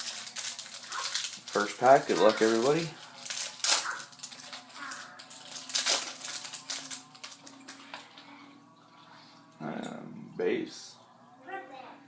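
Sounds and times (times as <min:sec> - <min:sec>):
foil wrapper tearing and crinkling: 0:00.0 - 0:08.2.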